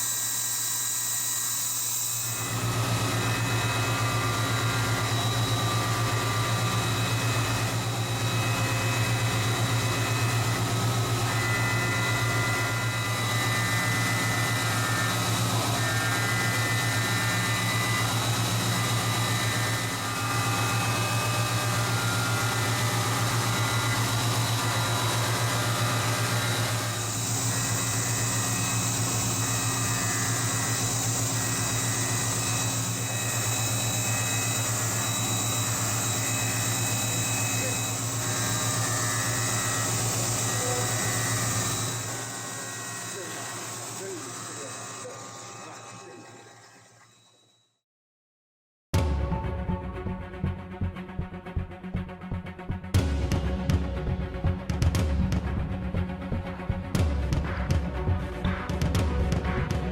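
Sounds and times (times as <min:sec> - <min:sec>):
machine hum with whining tones: 0:00.0 - 0:47.7.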